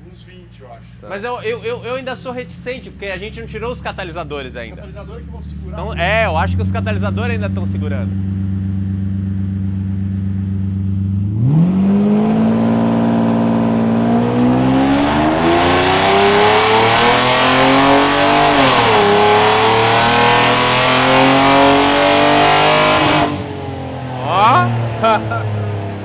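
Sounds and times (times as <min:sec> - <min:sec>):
car engine revving: 0:00.0 - 0:26.0.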